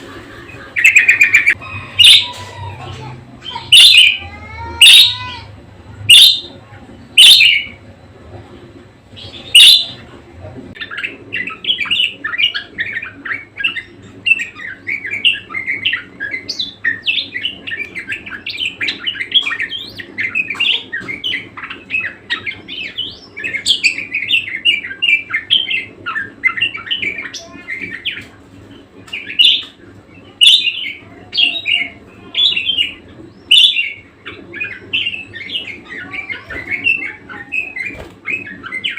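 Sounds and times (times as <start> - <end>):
budgerigar squawks: 0.8 - 2.3, 3.5 - 4.2, 6.1 - 6.5, 7.2 - 7.7, 9.5 - 10.0
budgerigar chirping: 3.5 - 4.2, 6.1 - 6.6, 7.2 - 7.8, 9.3 - 10.0, 30.4 - 38.9.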